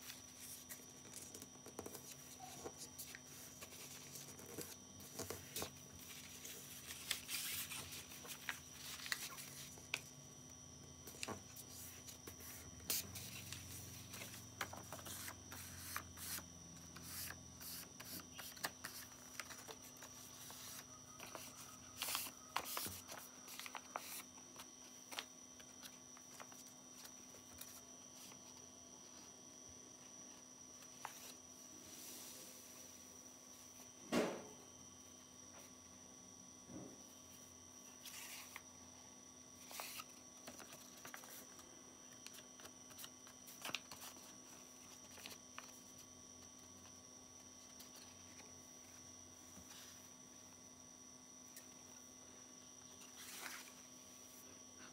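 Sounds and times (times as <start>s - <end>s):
paper rustling and crinkling: 0.0s - 10.1s, 17.0s - 28.6s, 39.6s - 41.6s, 42.2s - 46.1s
low electrical hum: 0.0s - 54.9s.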